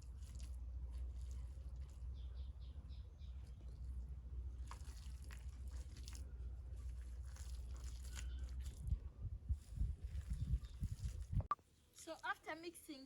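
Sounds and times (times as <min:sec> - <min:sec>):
hands mixing mud: 0:00.0 - 0:02.2, 0:03.3 - 0:09.0.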